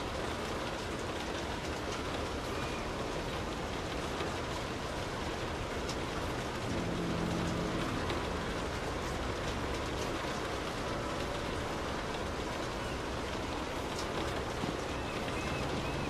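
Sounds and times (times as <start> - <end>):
rain drumming on car roof: 0.0 - 16.0
low hum: 6.4 - 12.0.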